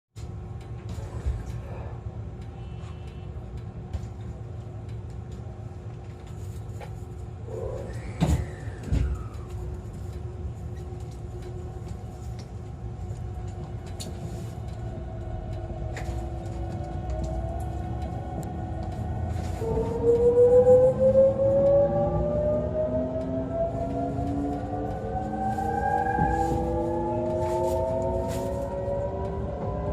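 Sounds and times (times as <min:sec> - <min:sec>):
train interior rumble: 0:00.2 - 0:29.9
traction motor whine rising: 0:16.9 - 0:29.9.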